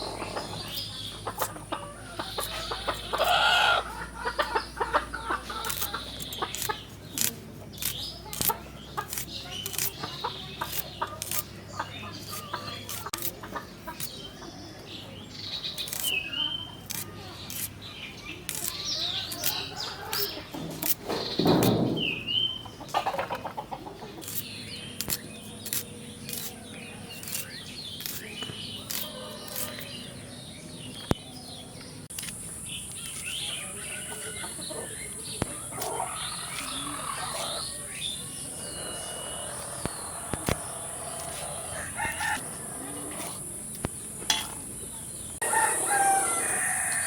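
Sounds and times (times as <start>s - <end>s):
chickens clucking: 0.0s - 15.1s, 18.5s - 26.7s, 33.0s - 47.0s
small birds chirping: 0.0s - 47.0s.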